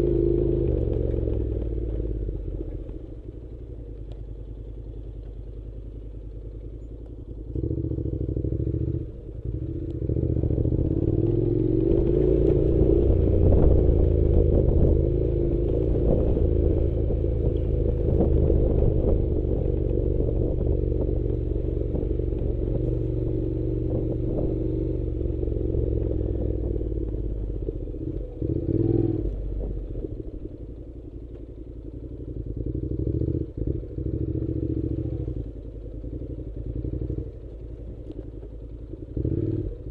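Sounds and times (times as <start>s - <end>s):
engine running: 0.0s - 39.9s.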